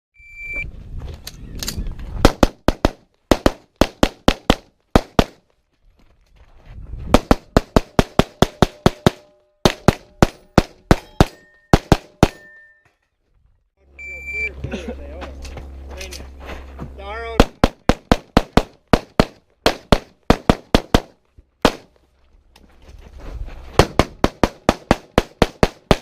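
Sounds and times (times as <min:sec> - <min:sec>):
rapid pistol shots: 0:02.2 - 0:05.4, 0:07.1 - 0:12.4, 0:17.4 - 0:21.9, 0:23.8 - 0:26.0
steel targets ringing: 0:08.4 - 0:13.1.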